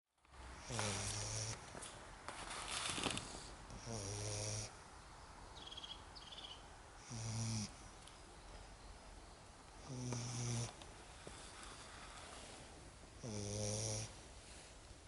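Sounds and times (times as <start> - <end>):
puppy snoring: 0.6 - 1.6, 3.8 - 4.7, 7.0 - 7.9, 9.8 - 10.8, 13.2 - 14.2.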